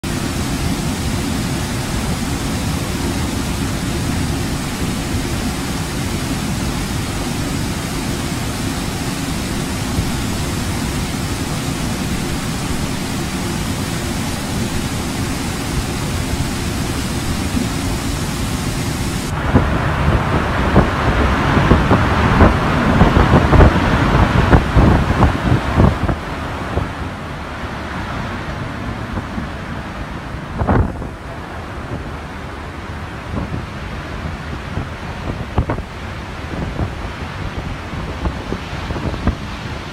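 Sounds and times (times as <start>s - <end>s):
bright rushing noise: 0.0s - 21.4s
rain hiss: 0.0s - 39.9s
wind buffeting microphone: 0.0s - 39.9s.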